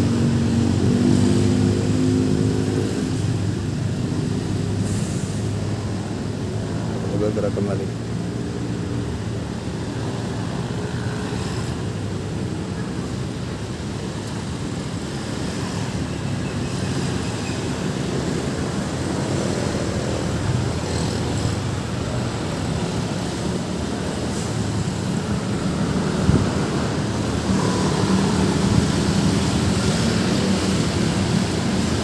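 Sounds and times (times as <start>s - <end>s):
heavy vehicle engines droning: 0.0s - 32.0s.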